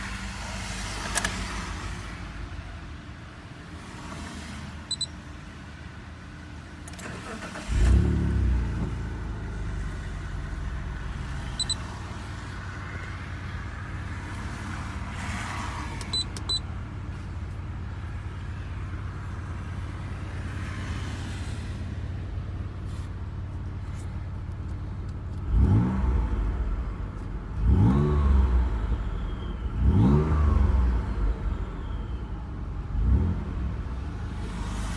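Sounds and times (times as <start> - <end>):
car engine idling and revving: 0.0 - 34.9
whistle rising with engine revs: 27.6 - 33.3.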